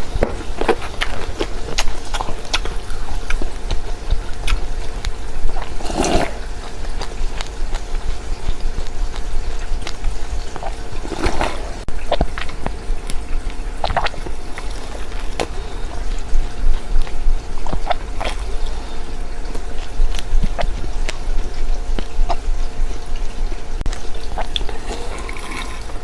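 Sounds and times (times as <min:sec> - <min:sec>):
seeds being chewed: 0:00.0 - 0:12.6, 0:23.9 - 0:26.0.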